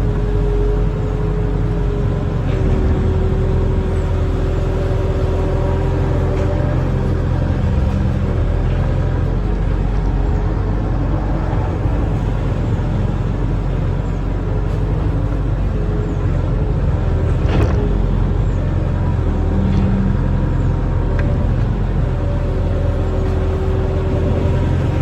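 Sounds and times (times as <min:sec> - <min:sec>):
diesel engine running under load: 0:00.0 - 0:25.0.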